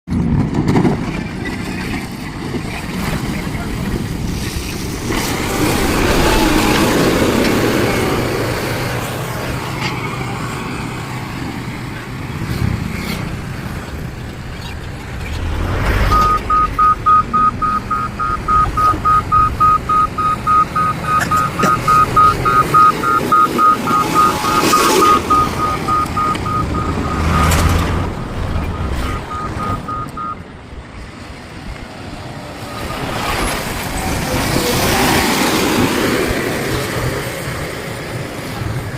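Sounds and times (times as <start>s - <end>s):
diesel engine running: 0.2s - 38.9s
reversing alarm beeping: 16.1s - 30.4s.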